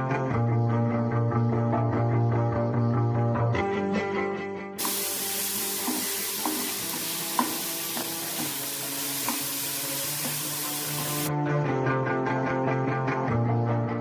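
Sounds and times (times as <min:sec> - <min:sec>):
chicken sizzling in hot oil: 0:04.8 - 0:11.3.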